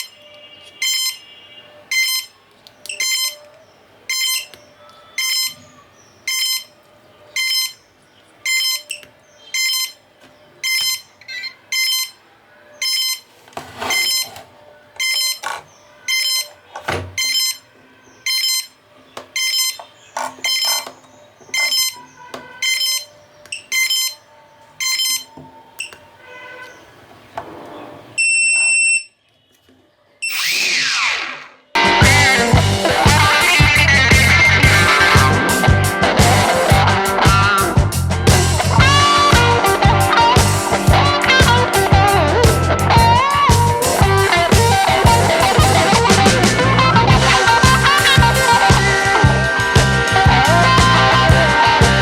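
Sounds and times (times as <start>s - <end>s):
electronic beeper beeping: 4.1s - 4.6s, 6.3s - 6.8s, 7.4s - 7.8s, 8.4s - 10.0s, 10.6s - 12.2s, 16.0s - 16.6s, 17.2s - 17.7s, 21.6s - 24.2s, 24.8s - 26.0s, 28.2s - 29.2s, 30.2s - 32.4s.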